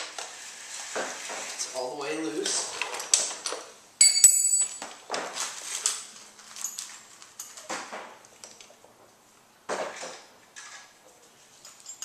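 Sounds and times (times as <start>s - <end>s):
metal tools clinking: 2.5s - 5.0s, 5.8s - 7.7s, 11.5s - 12.0s.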